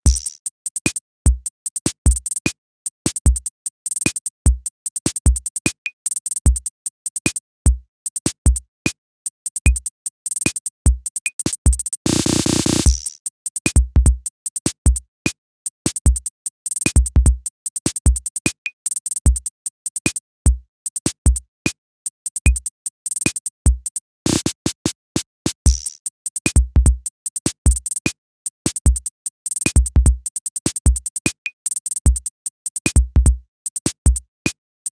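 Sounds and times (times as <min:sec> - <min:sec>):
electronic music with drum-machine beat: 0:12.0 - 0:13.1, 0:24.3 - 0:24.8, 0:25.7 - 0:26.0.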